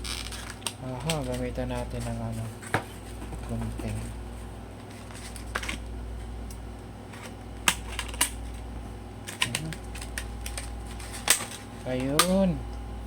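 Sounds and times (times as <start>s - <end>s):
steady low hum: 0.0s - 13.0s
scissors snipping plastic: 9.3s - 12.4s.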